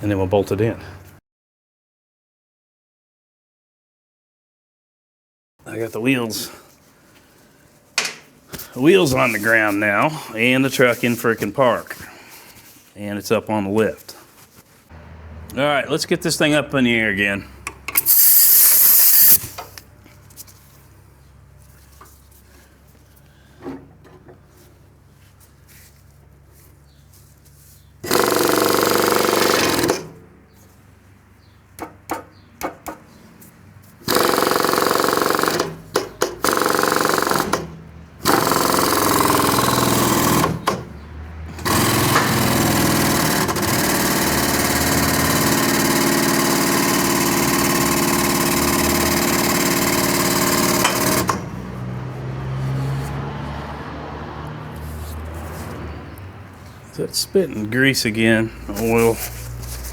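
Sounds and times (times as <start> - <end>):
hydraulic lift motor running: 17.7 - 19.4, 28.0 - 30.2, 34.0 - 52.0.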